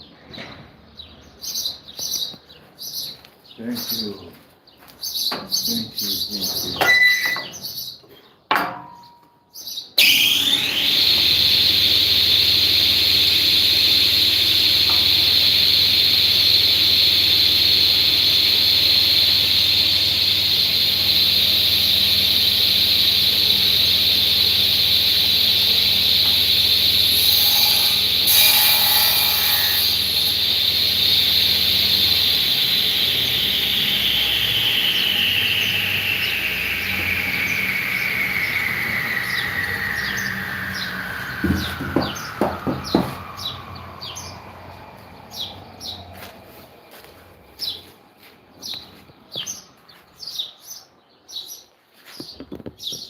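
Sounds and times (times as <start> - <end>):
woodworking machine whine: 10.0 - 49.4
low motor hum: 10.4 - 28.4, 29.0 - 49.6.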